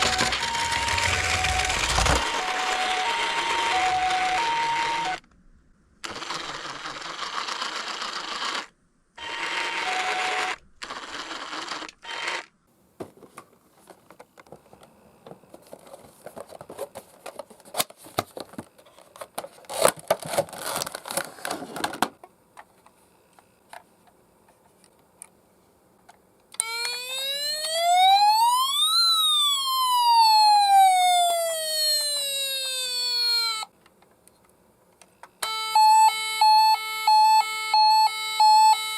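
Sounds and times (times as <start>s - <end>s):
toy electronic siren wail: 0.0s - 5.2s, 9.2s - 10.6s, 26.6s - 33.7s, 35.4s - 38.9s.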